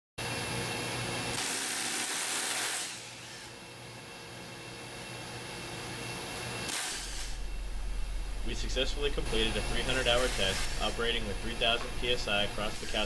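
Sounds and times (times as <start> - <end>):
machinery hum: 3.0 - 13.0.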